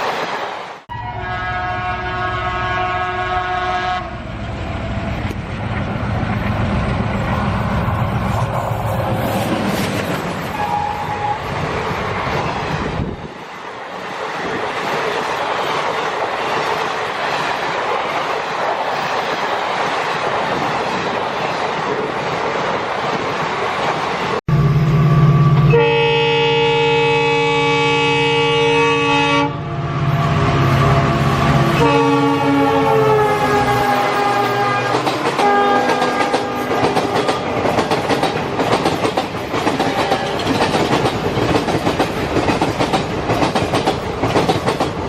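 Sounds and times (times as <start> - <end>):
train rattling on track: 0.0 - 0.9, 3.5 - 26.0, 29.1 - 45.0
low train rumble: 0.0 - 45.0
multi-tone train horn: 0.9 - 4.5, 10.5 - 11.5, 24.5 - 37.7, 39.8 - 40.5.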